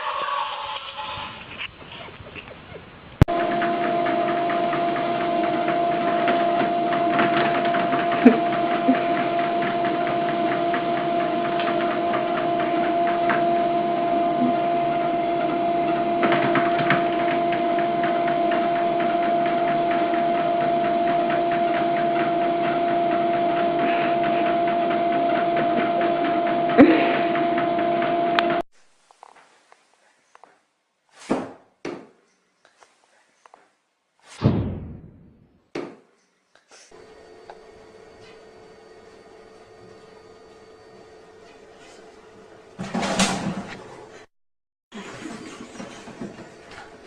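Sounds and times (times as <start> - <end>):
small electric motor humming: 3.3 - 28.6
knock: 31.3 - 32.1.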